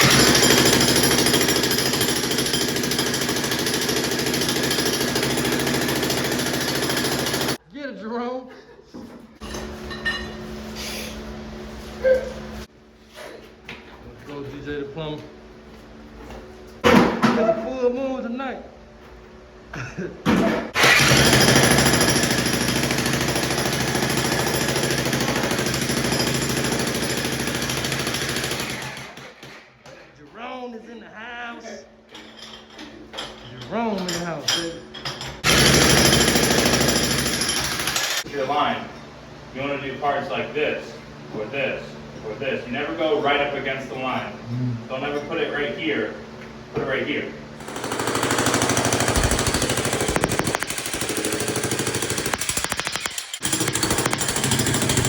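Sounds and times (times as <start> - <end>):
jackhammer breaking concrete: 0.0 - 7.6, 20.8 - 29.5, 35.4 - 38.2, 47.6 - 55.0.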